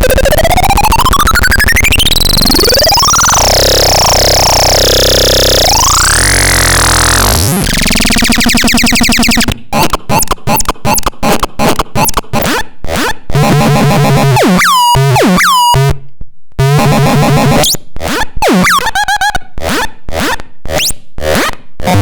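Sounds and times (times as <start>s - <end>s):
buzzy synth tones with pew swoops: 0.0s - 15.9s
synthesizer blips falling in pitch: 0.0s - 16.0s, 16.6s - 20.9s.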